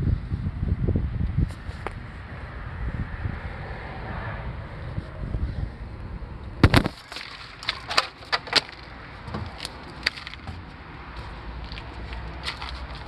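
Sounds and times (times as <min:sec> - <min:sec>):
sharp clicks and knocks: 0:07.6 - 0:10.8.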